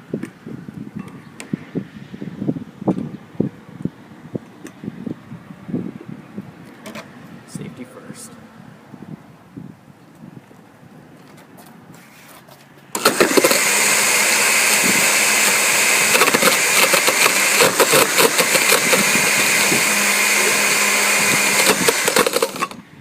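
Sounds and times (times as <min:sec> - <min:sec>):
blender motor running: 0:13.0 - 0:22.8
metal can clattering in blender: 0:13.0 - 0:22.8.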